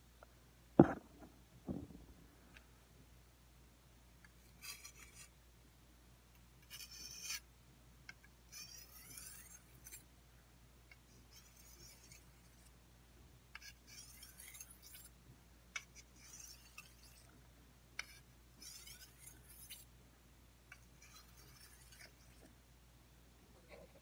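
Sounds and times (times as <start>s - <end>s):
blade drawn along honing stone: 4.2s - 5.4s, 6.4s - 7.5s, 8.1s - 10.1s, 10.9s - 12.8s, 13.5s - 17.4s, 18.0s - 19.9s, 20.7s - 22.6s.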